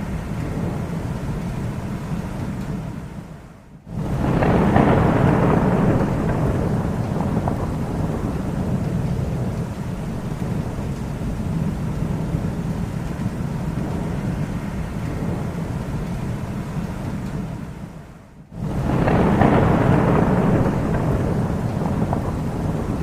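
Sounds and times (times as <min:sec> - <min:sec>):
thunder rumbling: 0:00.0 - 0:23.0
sharp thunderclap: 0:03.8 - 0:14.3, 0:18.5 - 0:23.0.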